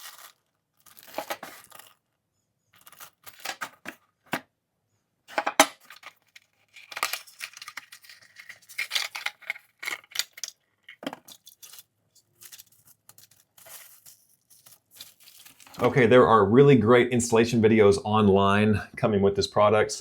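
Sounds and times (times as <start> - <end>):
packaging rustling and tearing: 0.0 - 2.0, 2.8 - 3.9, 5.8 - 16.0.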